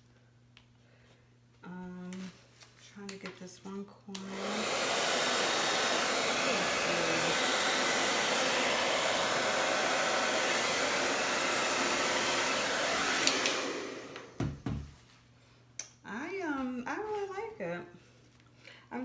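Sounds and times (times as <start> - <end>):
blow dryer switch click: 4.1 - 4.4, 12.4 - 14.4
blow dryer running: 4.2 - 14.9.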